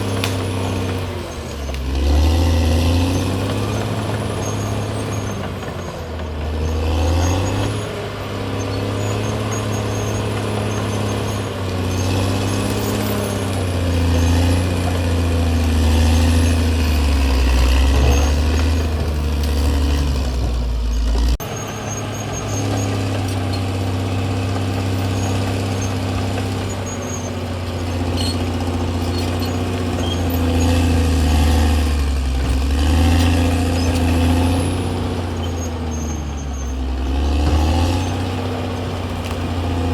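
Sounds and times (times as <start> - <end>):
bulldozer diesel engine under load: 0.0 - 39.9.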